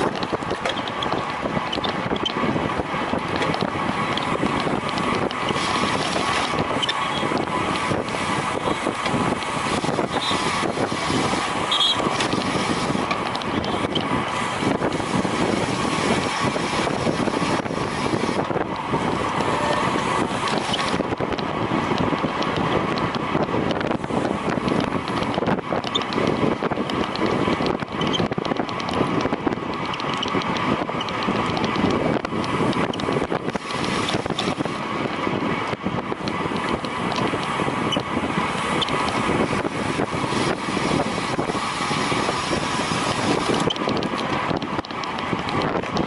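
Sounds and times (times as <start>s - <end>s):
wind rushing over microphone: 0.0s - 46.0s.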